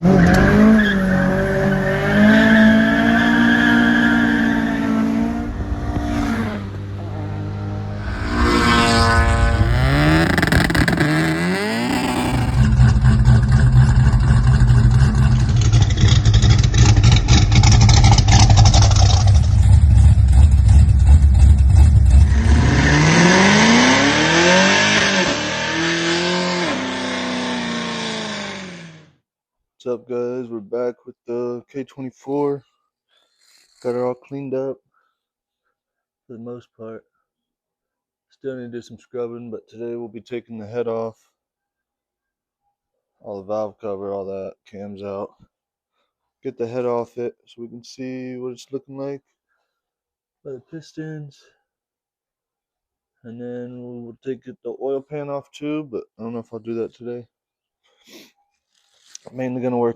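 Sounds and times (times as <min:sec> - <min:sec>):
car engine revving: 0:00.0 - 0:29.0.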